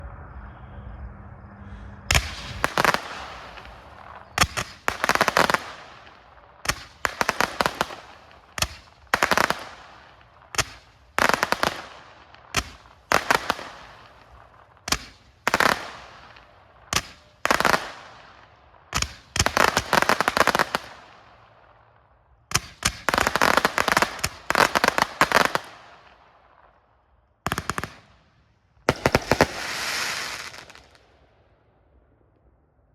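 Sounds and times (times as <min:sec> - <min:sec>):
firework cake firing: 0:02.1 - 0:21.4, 0:22.5 - 0:26.4, 0:28.8 - 0:31.1
firework reports and crackle: 0:02.1 - 0:21.6, 0:22.5 - 0:26.6, 0:28.8 - 0:31.2.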